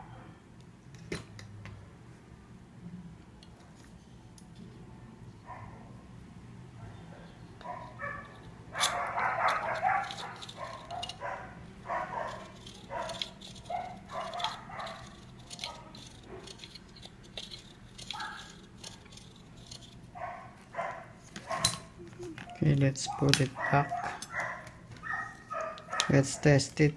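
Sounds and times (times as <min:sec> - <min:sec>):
dog barking and yipping: 0:06.9 - 0:16.6, 0:18.0 - 0:18.6, 0:20.1 - 0:26.6.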